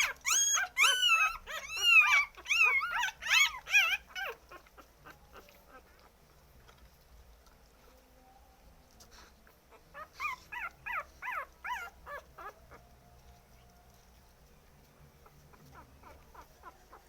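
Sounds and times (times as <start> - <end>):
puppies whimpering: 0.0 - 6.2, 9.5 - 13.0, 15.2 - 17.0.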